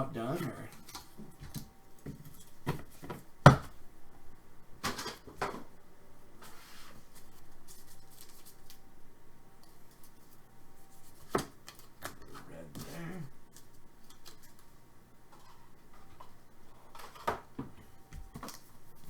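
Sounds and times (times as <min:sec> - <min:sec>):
card rustle: 0:06.4 - 0:08.9.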